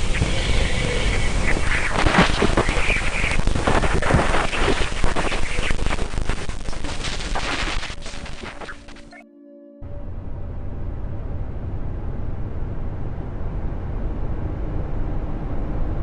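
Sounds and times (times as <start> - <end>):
crackling static: 0.0 - 9.2
low rumble: 9.8 - 16.0.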